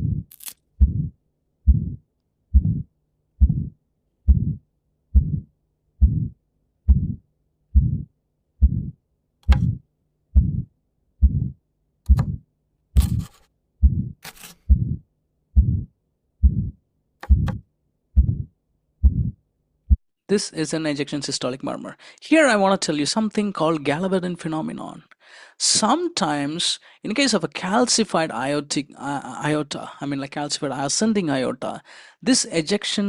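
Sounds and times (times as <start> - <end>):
heartbeat with murmur: 0.0 - 12.4, 13.8 - 15.0, 15.6 - 17.6, 18.2 - 20.0.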